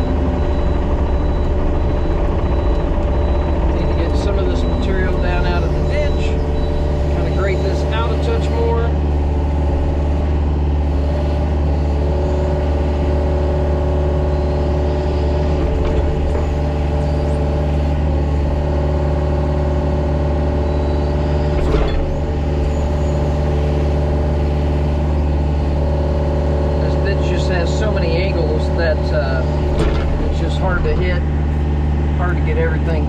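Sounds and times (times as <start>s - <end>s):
excavator diesel engine running: 0.0s - 33.0s
sharp machine clunk: 29.7s - 31.2s.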